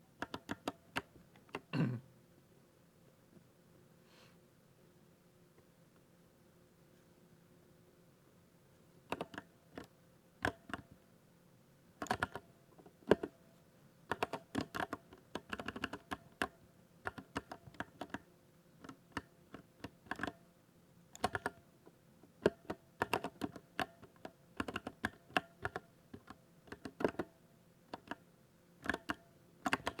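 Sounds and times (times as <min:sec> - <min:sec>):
mechanical keyboard typing: 0:00.2 - 0:01.7, 0:09.1 - 0:10.8, 0:12.0 - 0:13.3, 0:14.1 - 0:20.4, 0:21.1 - 0:21.6, 0:22.4 - 0:27.3, 0:27.9 - 0:28.2, 0:28.8 - 0:30.0.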